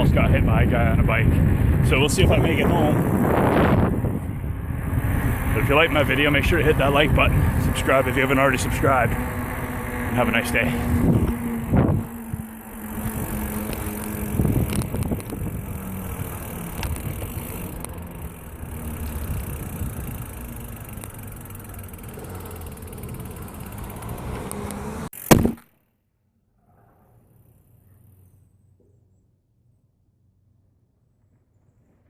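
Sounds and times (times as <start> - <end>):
wind on microphone: 0.0 - 10.0, 10.6 - 17.6
bike tyre rumble: 0.0 - 25.8, 26.5 - 29.3, 30.2 - 32.0
sharp knock: 25.3 - 25.6.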